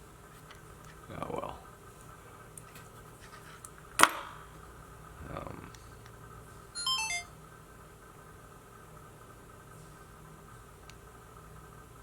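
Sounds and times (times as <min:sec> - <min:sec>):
descending electronic chime: 0:06.8 - 0:07.3.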